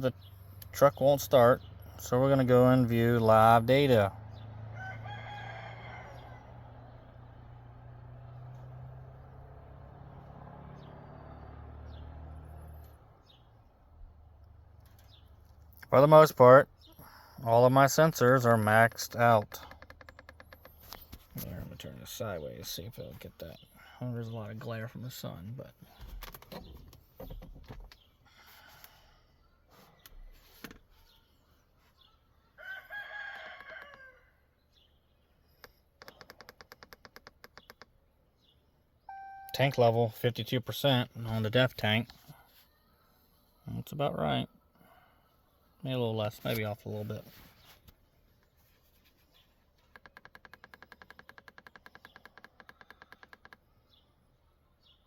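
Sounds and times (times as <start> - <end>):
faint high beep tone: 39.1 - 39.8.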